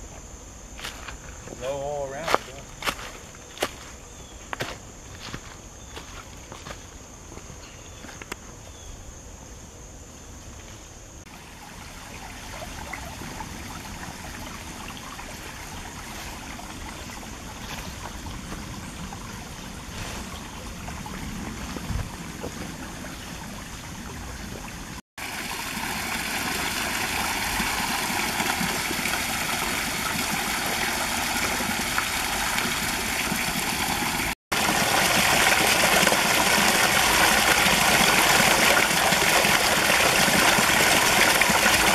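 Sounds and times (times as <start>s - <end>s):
creek water babbling: 11.3s - 41.9s.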